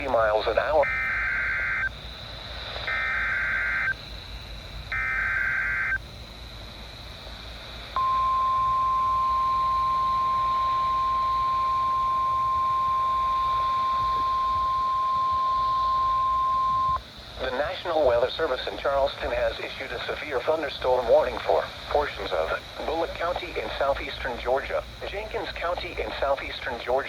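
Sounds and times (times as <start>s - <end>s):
steady high alarm tone: 0.0s - 1.9s, 2.8s - 4.2s, 4.9s - 6.0s, 8.0s - 17.0s
warbling data bursts: 0.0s - 2.0s, 2.6s - 4.1s, 4.9s - 6.0s, 8.0s - 20.2s.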